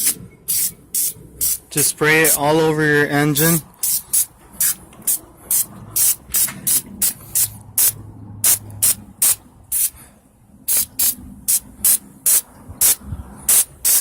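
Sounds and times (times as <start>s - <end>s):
spray can squirting: 0.0s - 1.6s, 3.8s - 9.9s, 10.7s - 14.0s.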